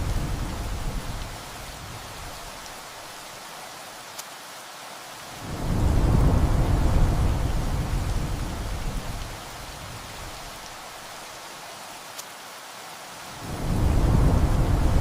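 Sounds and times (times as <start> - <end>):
heavy rain hiss: 0.0 - 15.0
thunder rumbling: 5.4 - 10.4, 13.4 - 15.0.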